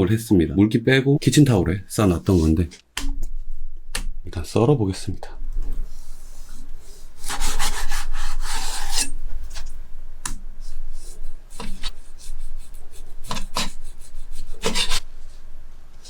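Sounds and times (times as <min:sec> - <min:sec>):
knife slicing chicken on cutting board: 0:14.6 - 0:15.0.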